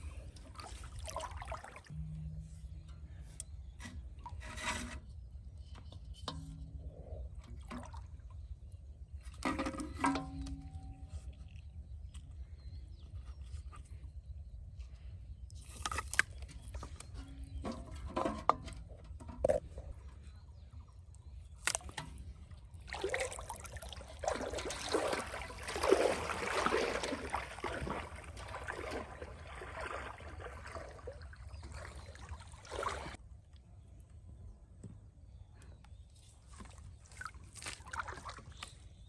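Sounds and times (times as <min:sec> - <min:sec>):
pond water splashing: 0:00.0 - 0:02.8, 0:07.4 - 0:08.6, 0:21.6 - 0:33.2, 0:36.4 - 0:39.0.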